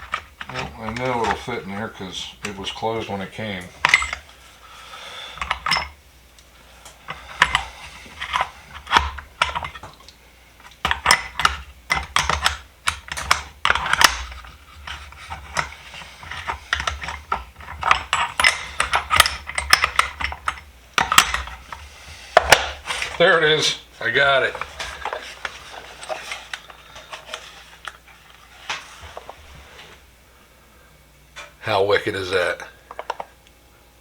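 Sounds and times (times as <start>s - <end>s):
metal sockets clicking and clinking: 0.0s - 2.8s, 3.5s - 4.3s, 10.6s - 21.8s, 32.9s - 33.3s.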